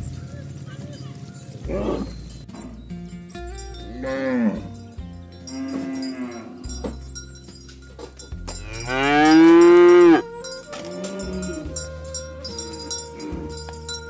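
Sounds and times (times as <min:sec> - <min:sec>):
cowbells clinking: 0:00.0 - 0:14.0
cow mooing: 0:00.2 - 0:02.9, 0:03.9 - 0:04.8, 0:05.5 - 0:06.9, 0:08.6 - 0:14.0.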